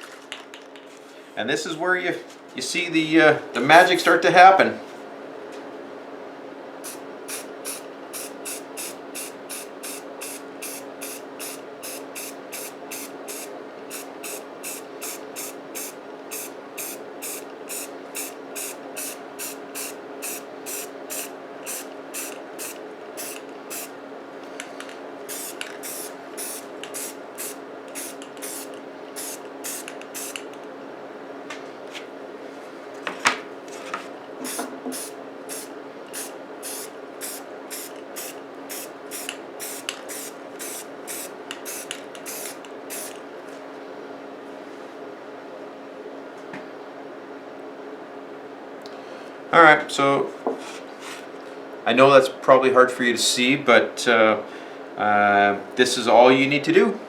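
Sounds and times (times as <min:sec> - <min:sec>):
aerosol can spraying: 0:06.8 - 0:23.9, 0:25.3 - 0:30.5, 0:34.4 - 0:43.2.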